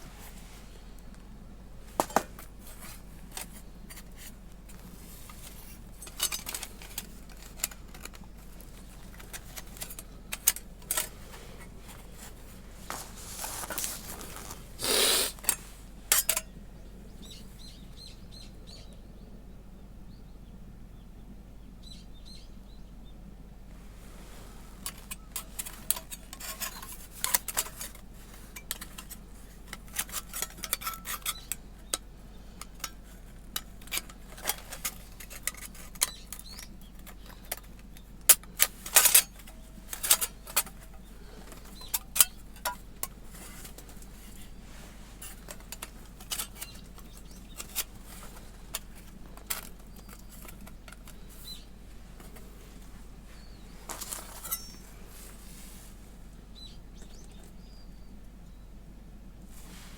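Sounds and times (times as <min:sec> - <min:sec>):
metal panels clinking: 0:05.3 - 0:16.5, 0:24.8 - 0:52.6, 0:53.6 - 0:55.0.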